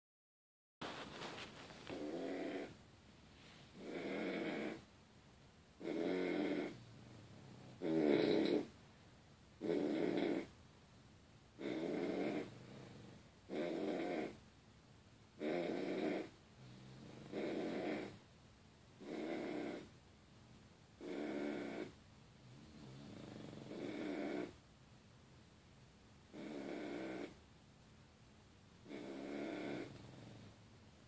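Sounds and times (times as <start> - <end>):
person snoring: 1.9 - 2.8, 3.8 - 4.8, 5.8 - 6.8, 7.5 - 8.7, 9.6 - 10.5, 11.6 - 14.4, 15.4 - 18.1, 22.7 - 24.5, 28.9 - 30.5.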